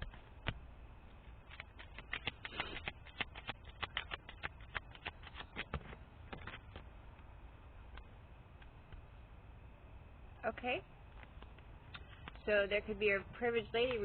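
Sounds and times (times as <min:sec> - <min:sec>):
cards being shuffled: 0:01.2 - 0:06.9.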